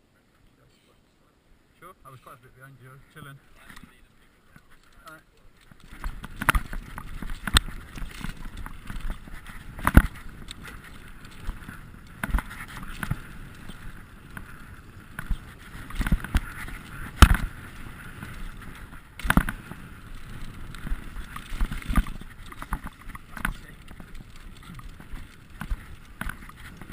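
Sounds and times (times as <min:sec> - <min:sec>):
tyre and wind noise: 0:03.5 - 0:26.9
bike knocks and rattles: 0:05.6 - 0:26.9.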